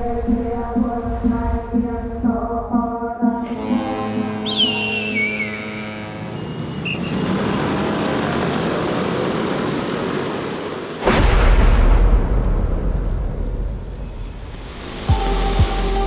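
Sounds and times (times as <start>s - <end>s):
steady rushing noise: 0.0s - 4.2s
deep rumbling boom: 11.1s - 15.0s.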